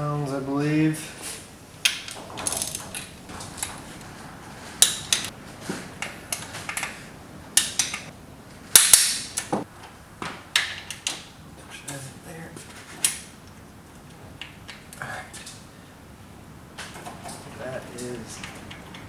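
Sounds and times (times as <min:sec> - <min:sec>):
torque wrench clicking: 0:07.6 - 0:08.1.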